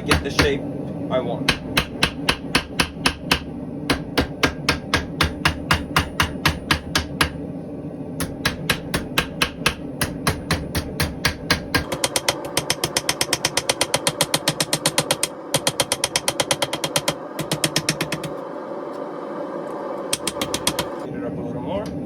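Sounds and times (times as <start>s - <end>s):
hammer striking hot steel: 0.0s - 0.6s, 1.4s - 7.4s, 8.2s - 18.4s.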